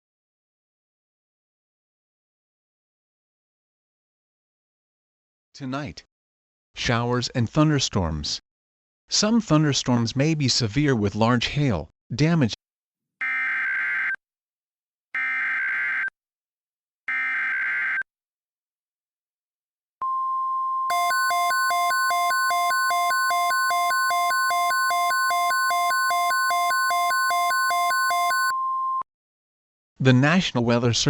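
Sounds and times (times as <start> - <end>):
pulsing beep: 20.0 - 29.1
steady alarm tone: 20.9 - 28.5.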